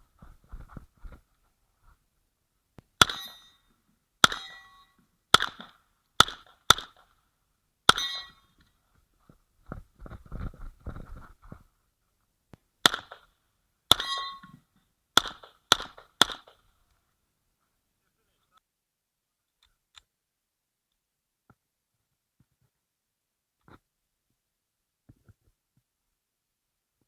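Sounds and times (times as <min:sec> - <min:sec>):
pistol shots: 0:03.0 - 0:03.4, 0:04.2 - 0:04.7, 0:05.3 - 0:07.1, 0:12.8 - 0:13.3, 0:13.9 - 0:14.5, 0:15.2 - 0:16.6.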